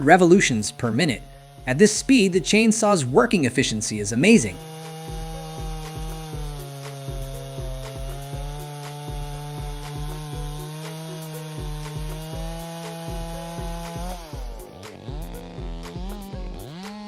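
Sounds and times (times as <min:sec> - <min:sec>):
background music with steady beat: 0:00.0 - 0:17.0
chainsaw running at high speed: 0:00.0 - 0:17.0.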